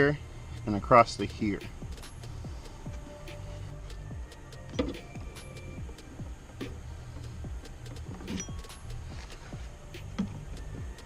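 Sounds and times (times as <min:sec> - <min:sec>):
kick drum thumps: 0:07.4 - 0:08.7.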